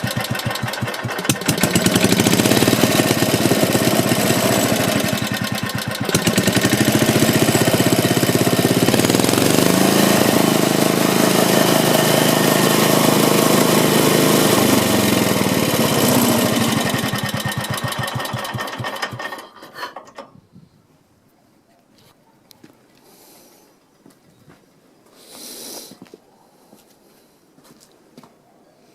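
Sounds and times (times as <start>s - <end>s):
small stationary engine running: 0.0s - 19.6s.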